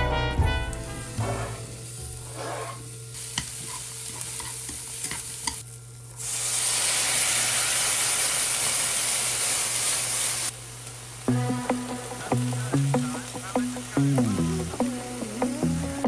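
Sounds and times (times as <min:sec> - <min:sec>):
food sizzling in a hot pan: 0:00.6 - 0:16.0.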